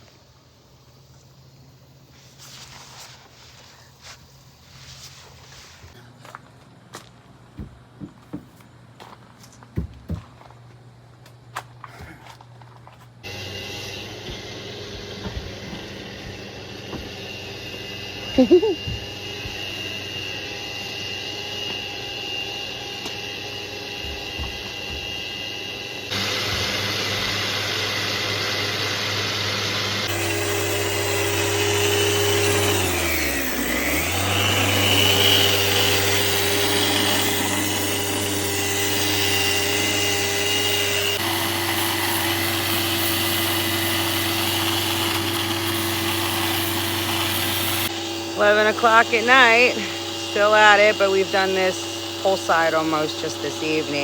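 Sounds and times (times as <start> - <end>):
electric sander running: 13.2 - 54.0.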